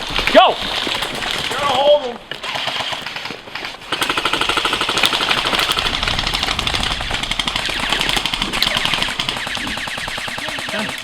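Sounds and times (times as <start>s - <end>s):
airsoft gun firing full-auto: 2.4s - 11.0s.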